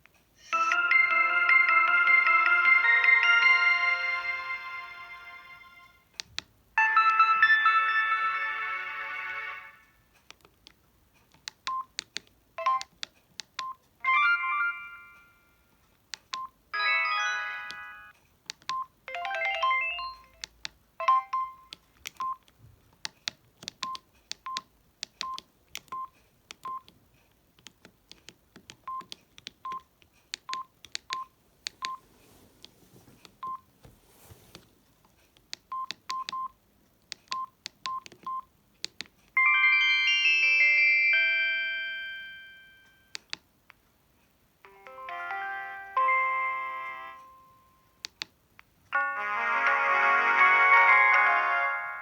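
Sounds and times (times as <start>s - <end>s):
multi-note phone tone: 0.5s - 5.8s
keypad clicks with beeps: 11.4s - 13.8s, 16.1s - 16.6s, 18.5s - 27.0s, 27.6s - 32.0s, 35.4s - 39.1s, 43.1s - 43.5s, 48.0s - 48.3s
phone alert chimes: 19.1s - 20.4s, 21.0s - 22.4s.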